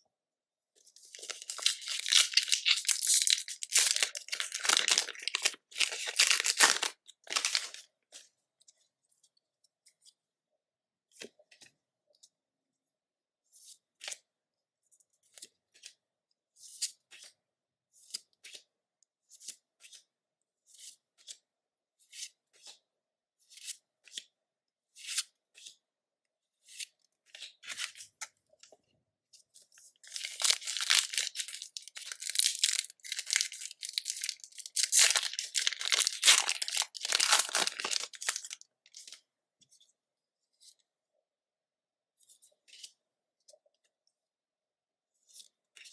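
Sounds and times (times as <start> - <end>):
foil wrapper tearing and crinkling: 1.1 - 7.8, 30.0 - 38.6.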